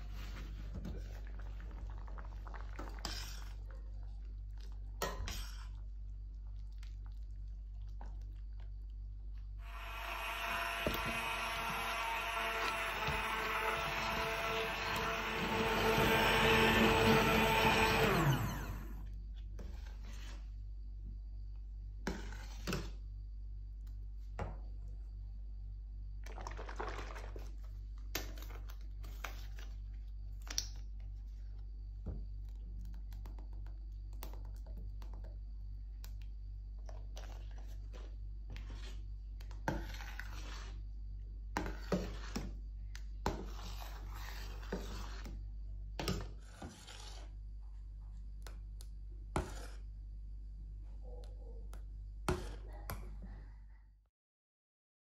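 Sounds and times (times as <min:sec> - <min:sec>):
rubbing and scraping: 0:37.2 - 0:40.9, 0:43.2 - 0:47.4.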